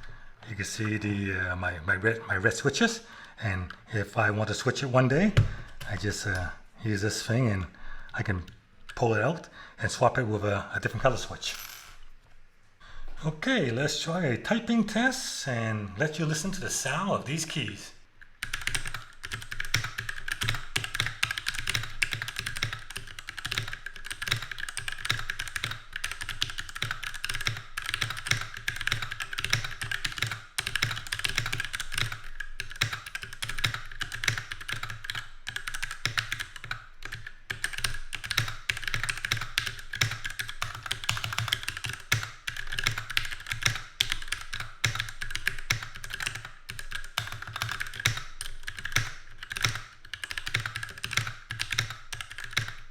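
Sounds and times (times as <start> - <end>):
fast mechanical keyboard typing: 16.5 - 52.9.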